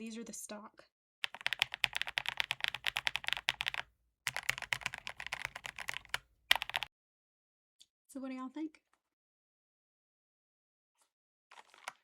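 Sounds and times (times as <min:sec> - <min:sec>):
typing on mechanical keyboard: 0:01.2 - 0:06.9.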